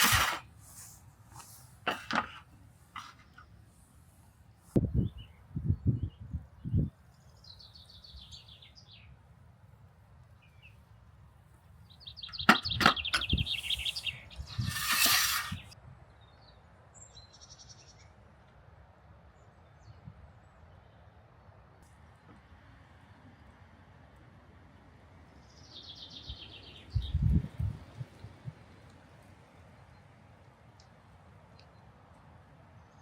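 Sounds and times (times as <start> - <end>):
brief hiss: 0.0 - 3.1, 13.2 - 15.8
birds chirping and trilling: 11.9 - 15.8.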